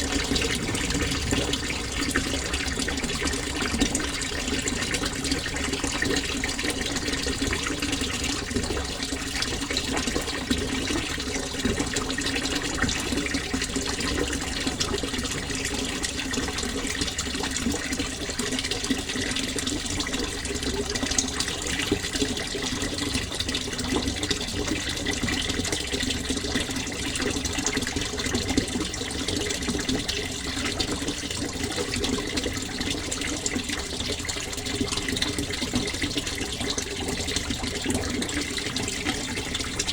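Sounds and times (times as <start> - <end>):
water flowing: 0.0 - 39.9.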